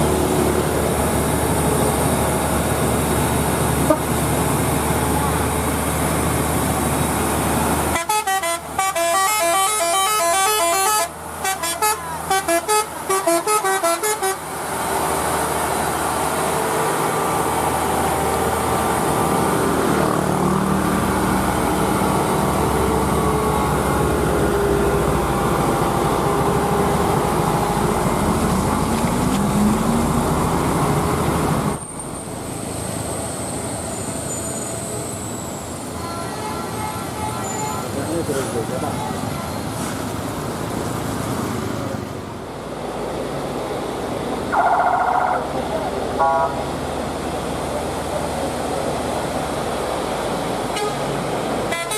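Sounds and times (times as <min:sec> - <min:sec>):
heavy engines running: 0:00.0 - 0:51.9
multi-tone musical horn: 0:07.9 - 0:14.4, 0:46.2 - 0:46.6, 0:50.7 - 0:51.0.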